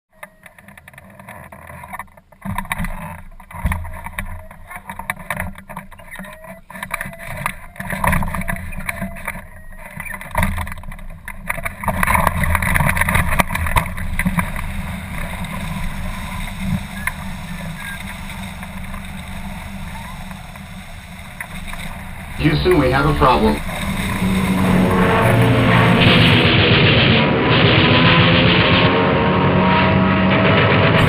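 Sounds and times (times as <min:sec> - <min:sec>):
wind buffeting microphone: 0:04.9 - 0:26.6.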